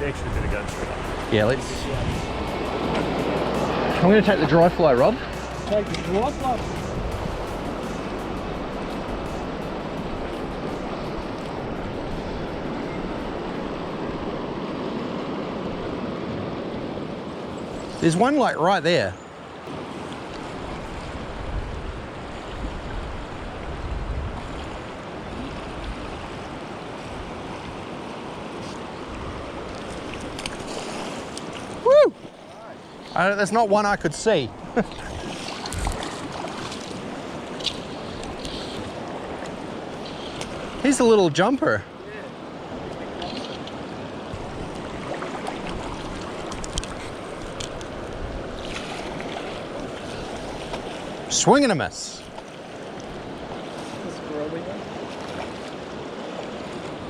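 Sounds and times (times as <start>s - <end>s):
wind rumble on microphone: 0.0s - 17.3s, 20.4s - 27.9s, 34.8s - 40.8s, 44.2s - 51.2s
fast-flowing river water: 0.0s - 57.0s.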